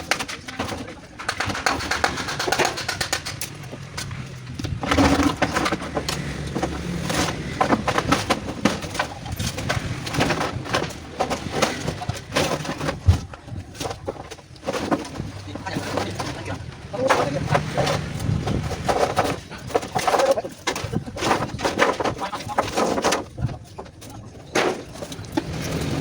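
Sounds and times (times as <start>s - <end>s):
metal knocking and clattering: 0.0s - 26.0s.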